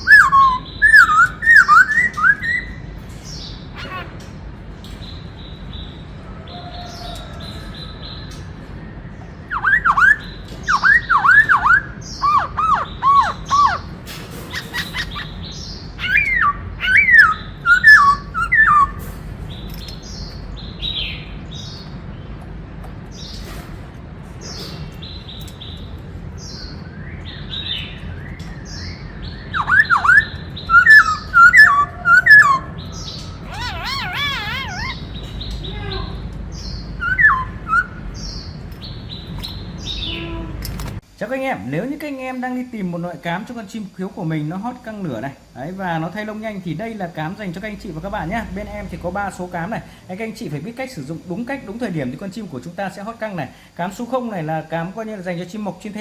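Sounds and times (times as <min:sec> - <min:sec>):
bird whistled phrases: 0:00.0 - 0:02.8, 0:09.5 - 0:13.9, 0:16.0 - 0:19.0, 0:29.4 - 0:36.2, 0:37.0 - 0:38.0
wavering bird trill: 0:00.0 - 0:04.2, 0:05.6 - 0:19.1, 0:27.2 - 0:38.5
high bird chattering: 0:00.0 - 0:06.0, 0:09.4 - 0:21.9, 0:28.7 - 0:40.6.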